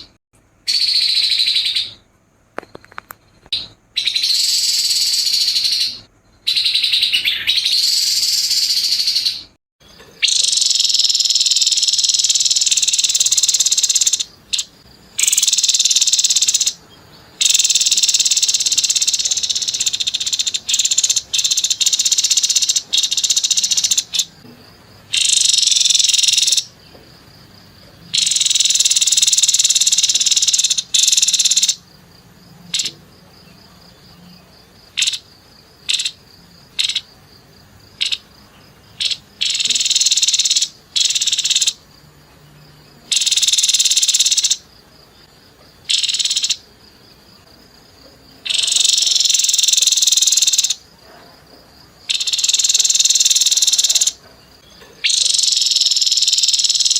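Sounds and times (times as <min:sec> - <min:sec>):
bird harsh rapid calls: 0:03.5 - 0:09.5, 0:10.2 - 0:16.8, 0:39.0 - 0:41.8, 0:55.0 - 0:56.9.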